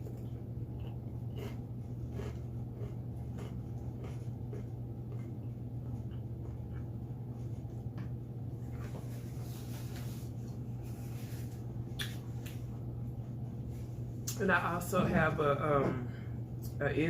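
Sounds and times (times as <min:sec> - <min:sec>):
chewing: 0:00.0 - 0:07.5
steady low hum: 0:00.0 - 0:17.0.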